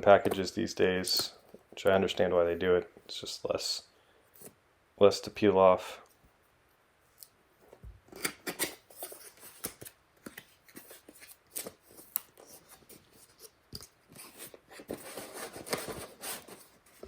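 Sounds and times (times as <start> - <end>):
cardboard packaging being handled: 8.2 - 17.0.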